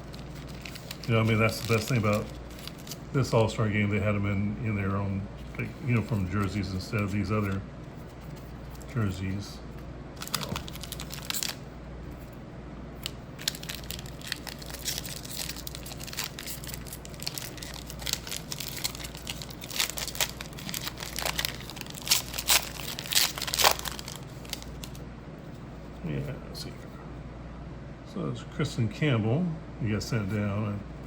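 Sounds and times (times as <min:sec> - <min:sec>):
wrapper crackling: 0:00.0 - 0:03.4, 0:10.2 - 0:11.6, 0:13.0 - 0:25.0.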